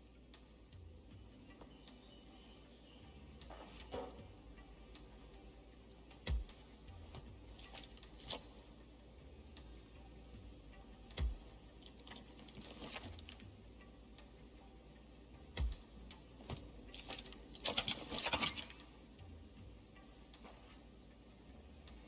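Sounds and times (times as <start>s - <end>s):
objects clattering and rattling: 12.0s - 13.4s, 16.4s - 19.0s
short rising squeak: 18.3s - 19.2s.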